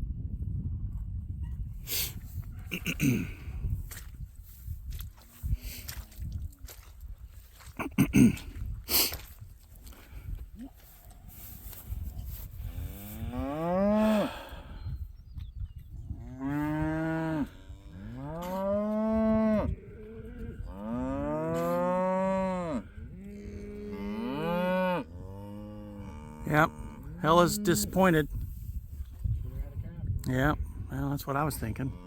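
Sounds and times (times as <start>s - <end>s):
cow mooing: 12.8s - 14.4s, 16.2s - 28.0s.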